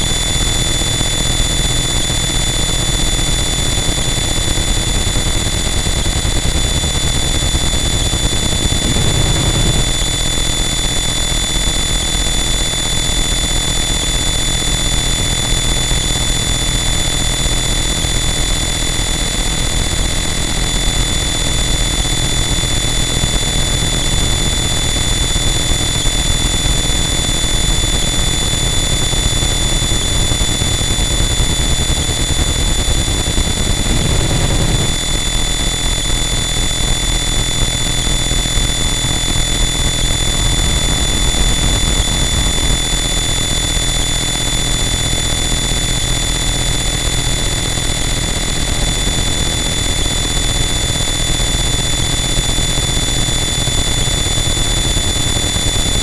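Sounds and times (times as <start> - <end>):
high-pitched whines: 0.0 - 14.4, 20.8 - 45.9
dense static noise: 7.7 - 10.4, 32.2 - 36.2.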